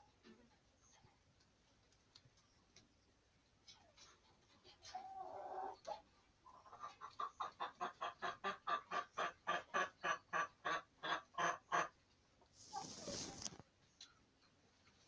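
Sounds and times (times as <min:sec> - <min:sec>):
chicken clucking rapidly: 0:03.8 - 0:13.4
chicken calling: 0:04.8 - 0:12.0.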